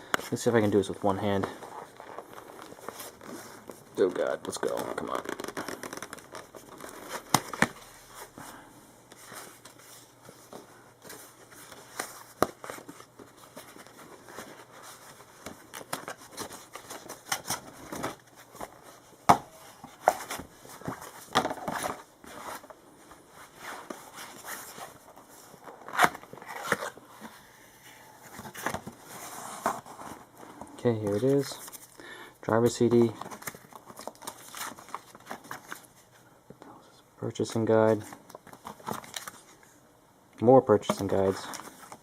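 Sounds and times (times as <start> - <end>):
packaging rustling and crinkling: 0.0 - 8.6, 32.6 - 36.1, 37.9 - 39.8.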